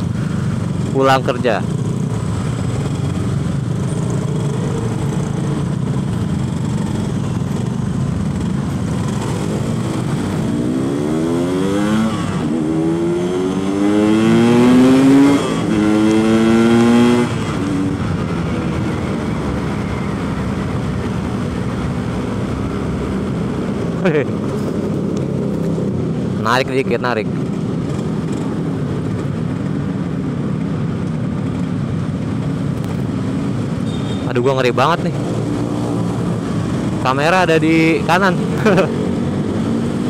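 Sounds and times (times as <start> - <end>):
two-stroke motorcycle engine: 0.0 - 26.4.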